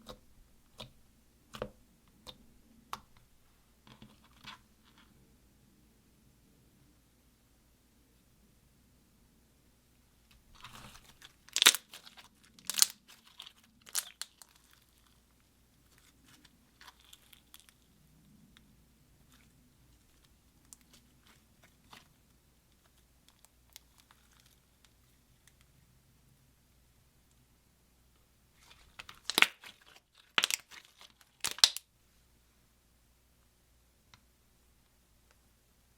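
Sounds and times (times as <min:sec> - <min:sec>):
slime crackling and popping: 0:10.6 - 0:15.2, 0:15.9 - 0:17.8, 0:28.9 - 0:31.9.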